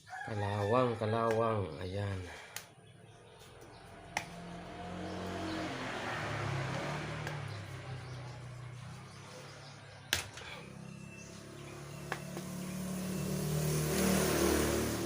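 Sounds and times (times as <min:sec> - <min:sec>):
low drone: 0:10.4 - 0:15.0.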